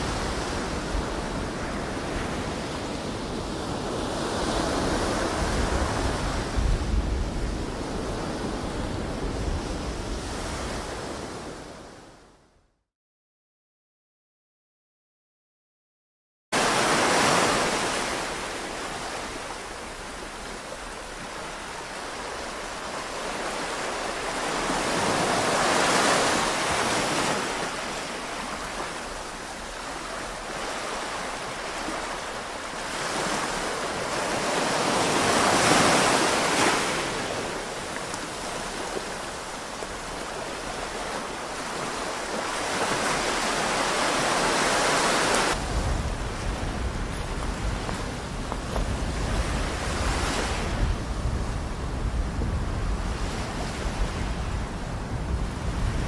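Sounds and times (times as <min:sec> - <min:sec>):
small waves breaking on shore: 0:16.6 - 0:56.0.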